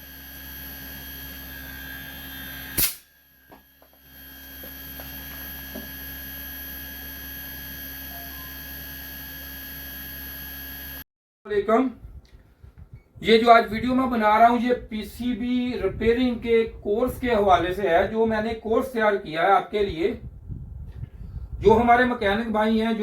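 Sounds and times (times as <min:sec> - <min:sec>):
sharp click: 0:02.8 - 0:03.1.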